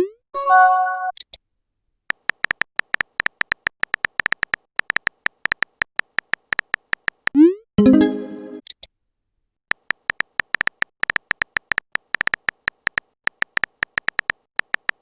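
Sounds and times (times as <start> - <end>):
keypress clicks: 2.1 - 7.4, 9.7 - 15.0.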